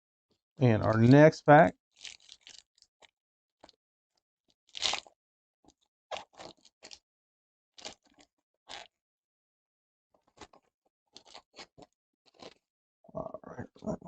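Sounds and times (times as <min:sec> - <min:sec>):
wrapper crinkling as torn open: 0:04.8 - 0:05.1.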